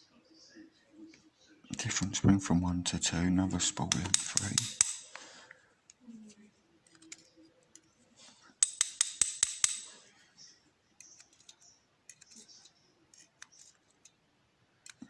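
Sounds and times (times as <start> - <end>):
sharp metallic clicks: 3.8 - 5.2, 8.6 - 9.9.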